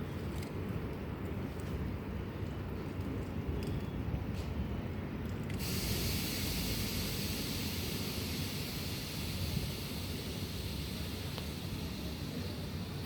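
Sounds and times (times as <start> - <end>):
train low rumble: 0.0 - 13.0
hiss: 5.5 - 13.0.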